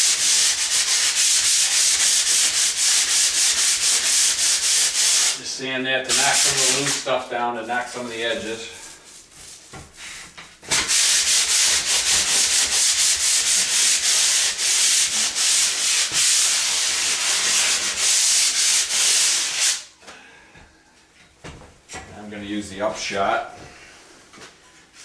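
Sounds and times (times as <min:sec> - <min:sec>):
sanding drywall ceiling: 0:00.0 - 0:19.9.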